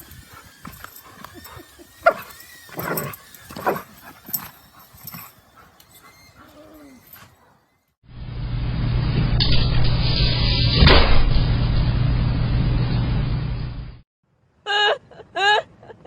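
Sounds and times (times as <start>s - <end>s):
dog whining: 0.0s - 7.8s.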